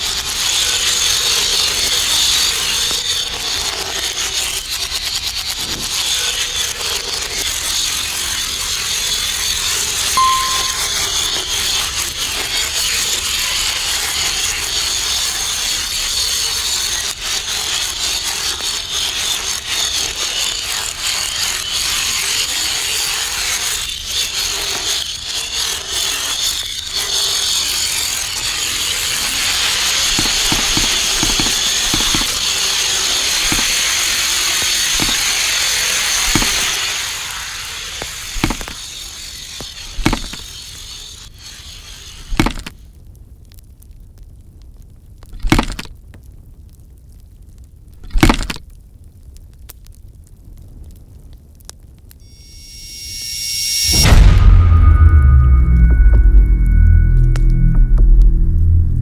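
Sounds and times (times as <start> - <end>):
large dominoes thudding: 29.9 - 32.5, 33.3 - 34.2, 34.9 - 35.4, 36.2 - 36.8, 38.3 - 38.8, 39.6 - 40.4, 42.2 - 42.7.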